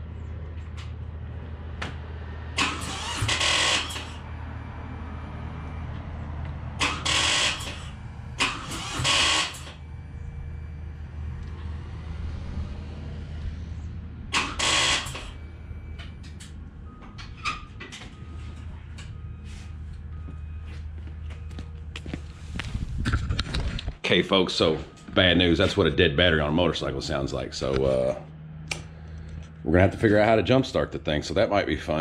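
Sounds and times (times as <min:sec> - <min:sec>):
motorcycle starter clatter: 0:02.6 - 0:04.2, 0:06.8 - 0:09.8, 0:14.3 - 0:15.4.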